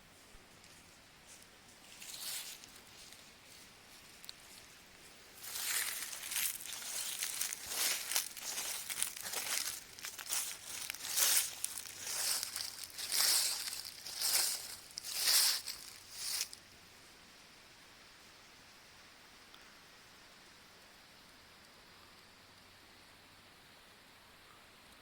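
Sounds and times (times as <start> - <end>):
dry leaves rustling and crackling: 0.6 - 16.6.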